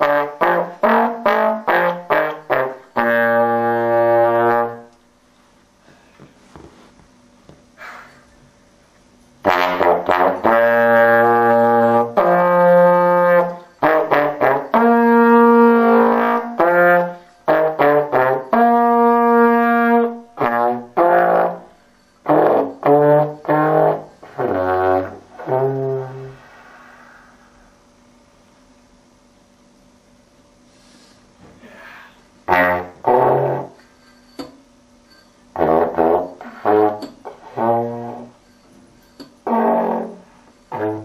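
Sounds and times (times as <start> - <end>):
trombone playing a melody: 0.0 - 5.0, 9.4 - 26.5, 32.4 - 33.8, 35.5 - 38.4, 39.4 - 41.0.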